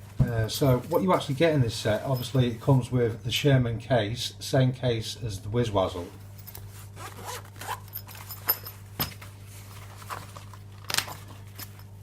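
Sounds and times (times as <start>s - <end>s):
zipper of case opening: 6.8s - 8.7s.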